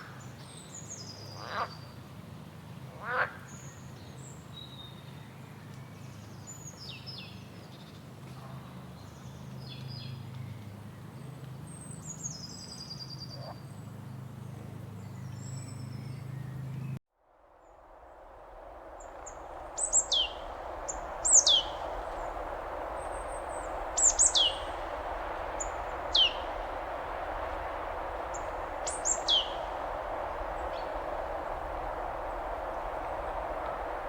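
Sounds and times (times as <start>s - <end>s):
waterfall rushing: 19.5s - 34.0s
bird giving high downward calls: 19.8s - 22.4s, 23.0s - 26.9s, 27.6s - 31.0s.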